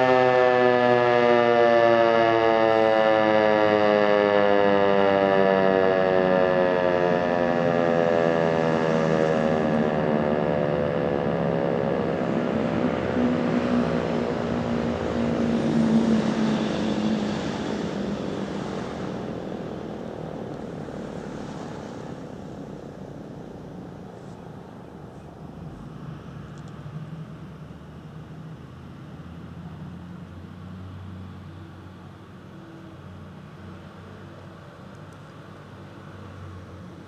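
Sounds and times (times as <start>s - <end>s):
tornado siren winding down: 0.0s - 24.7s.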